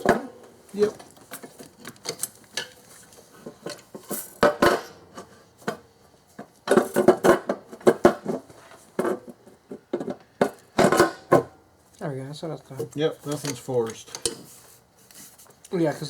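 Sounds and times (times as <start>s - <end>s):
metal clunks and clatter: 3.4s - 11.6s.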